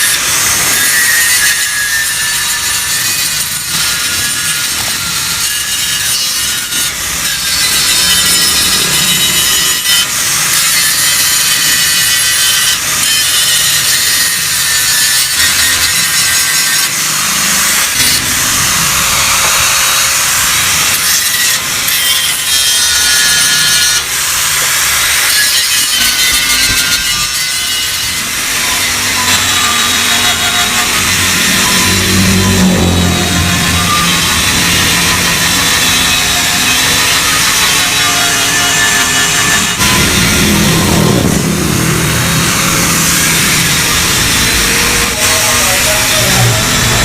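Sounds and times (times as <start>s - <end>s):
harsh metal hiss: 0.0s - 47.0s.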